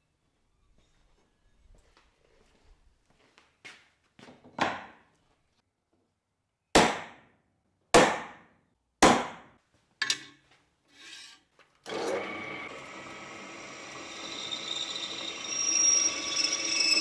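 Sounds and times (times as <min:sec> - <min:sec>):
hammer strikes: 0:06.8 - 0:07.2, 0:08.0 - 0:09.5.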